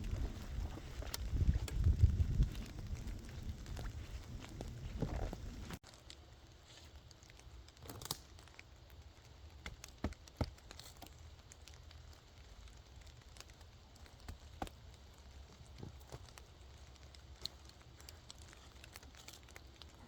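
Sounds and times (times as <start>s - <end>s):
campfire crackling: 0.0s - 20.0s
sharp pops from burning wood: 7.2s - 20.0s.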